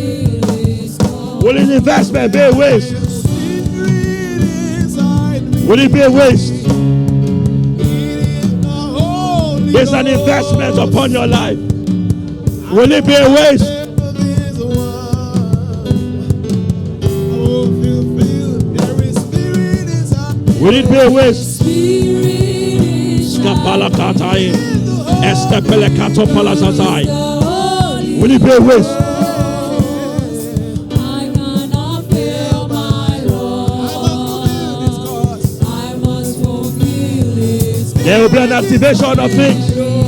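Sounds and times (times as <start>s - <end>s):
instrumental worship music: 0.0s - 40.0s
person chanting or singing: 1.4s - 3.7s, 8.1s - 11.6s, 23.3s - 27.2s, 38.0s - 39.8s.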